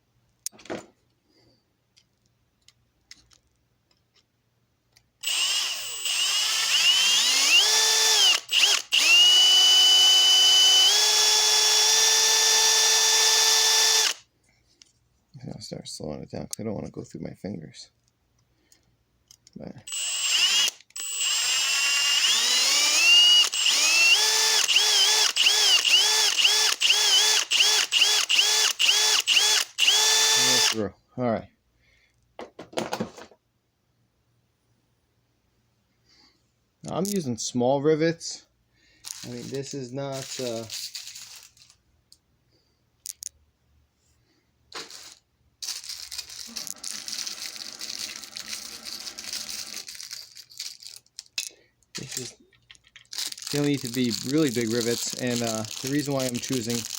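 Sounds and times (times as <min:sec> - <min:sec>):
power drill drilling metal: 0:05.2 - 0:14.2, 0:19.9 - 0:30.8, 0:39.1 - 0:41.4, 0:46.4 - 0:49.9, 0:53.5 - 0:56.9
plastic packaging crinkling: 0:52.9 - 0:56.9.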